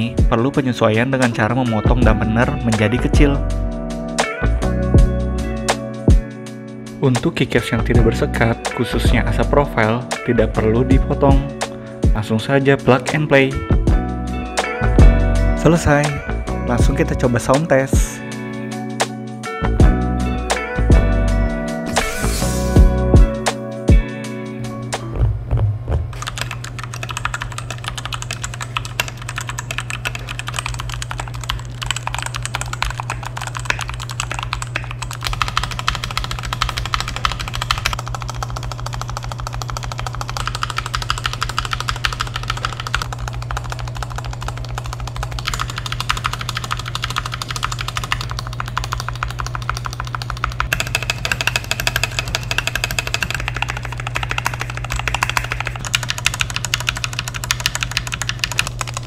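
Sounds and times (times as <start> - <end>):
fast typing on mechanical keyboard: 26.2 - 59.0.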